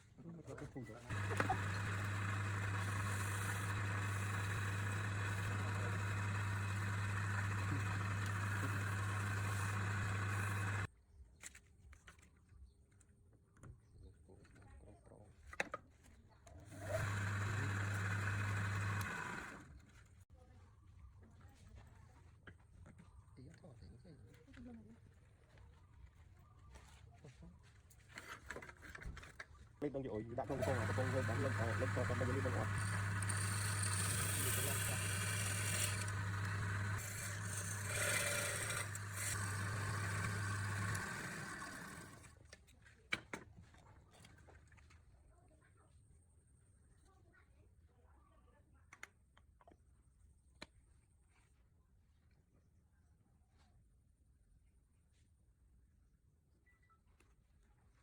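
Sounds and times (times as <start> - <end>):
scraping of turning wood: 1.1 - 10.9, 16.7 - 20.0, 30.4 - 42.3
small electric motor humming: 1.1 - 10.9, 16.7 - 19.9, 30.4 - 42.4.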